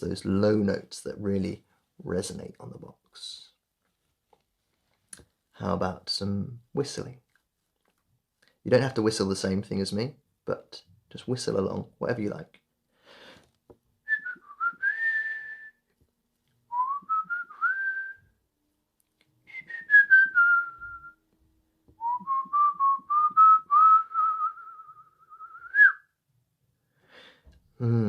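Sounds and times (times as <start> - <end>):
man whistling: 14.1 - 15.8, 16.7 - 18.3, 19.5 - 21.2, 22.0 - 26.1.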